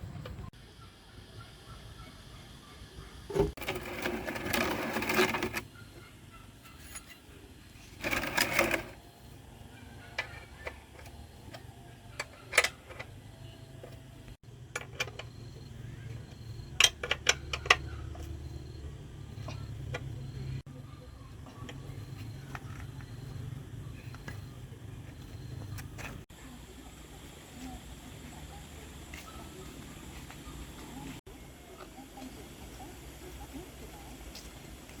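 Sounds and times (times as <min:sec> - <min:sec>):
rapid mechanical clicking: 0:08.0 - 0:09.0.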